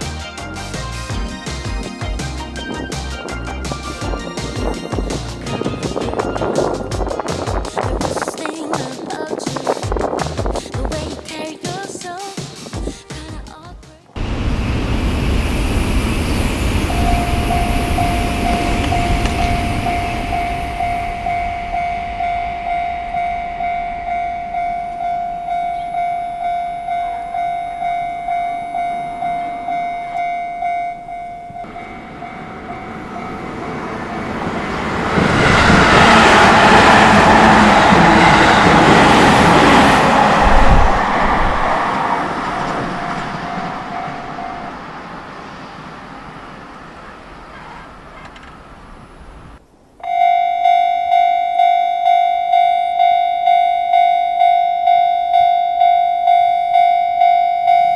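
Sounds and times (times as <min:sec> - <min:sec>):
train passing: 0:00.0 - 0:10.6, 0:14.2 - 0:57.9
level crossing electronic bell: 0:16.5 - 0:34.0, 0:50.0 - 0:57.9.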